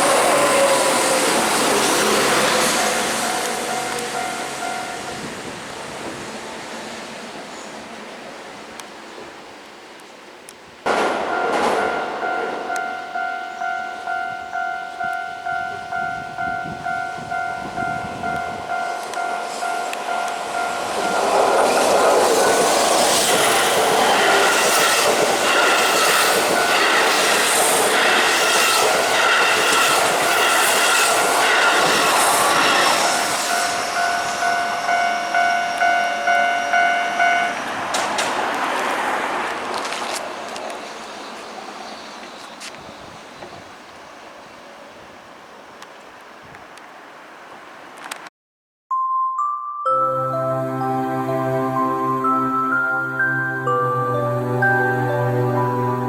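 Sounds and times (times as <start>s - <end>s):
level crossing alarm ringing: 0.0s - 5.6s, 10.9s - 38.2s
electric train passing: 0.0s - 10.0s, 10.9s - 48.0s, 49.9s - 56.0s
wheel and rail clatter: 18.1s - 42.8s.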